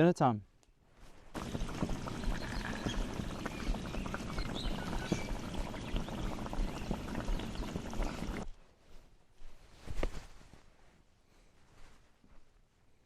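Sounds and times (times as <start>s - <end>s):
water boiling in a pot: 1.3s - 8.4s.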